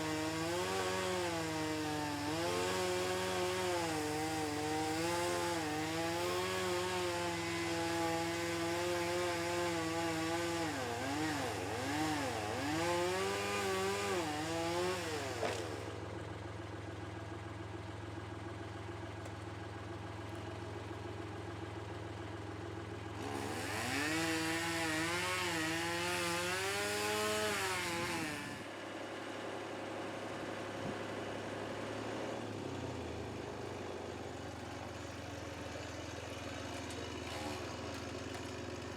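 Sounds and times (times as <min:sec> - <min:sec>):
chainsaw cutting wood: 0:00.0 - 0:16.2, 0:23.1 - 0:28.8, 0:30.6 - 0:38.9.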